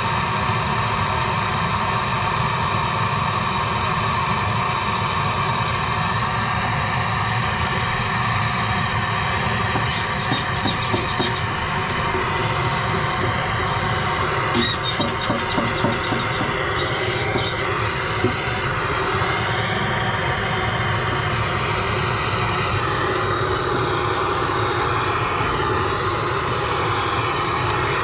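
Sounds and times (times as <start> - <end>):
torch flame roaring: 4.3 - 24.9.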